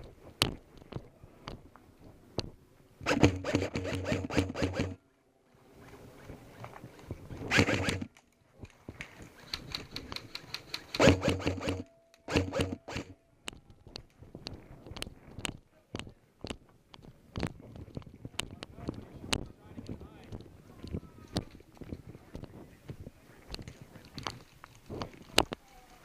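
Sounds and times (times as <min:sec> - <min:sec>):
airsoft gun rapid fire: 0:03.0 - 0:05.0, 0:07.5 - 0:08.1, 0:10.6 - 0:13.2
motor hum: 0:03.0 - 0:05.0, 0:07.5 - 0:08.1, 0:11.0 - 0:13.2.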